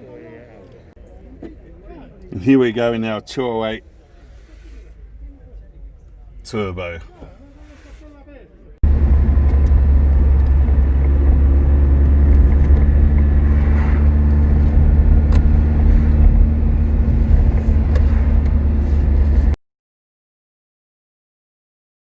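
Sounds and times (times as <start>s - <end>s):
car engine droning: 8.8s - 19.6s.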